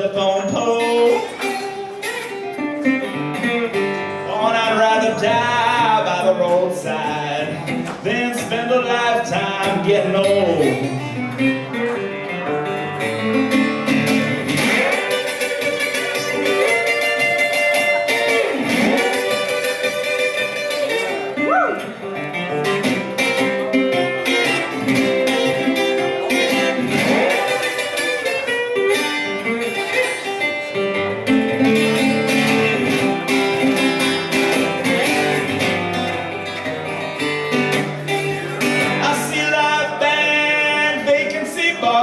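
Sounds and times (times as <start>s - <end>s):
person singing: 0.0s - 1.8s, 4.0s - 11.8s, 38.4s - 42.0s
blues guitar playing: 0.0s - 42.0s.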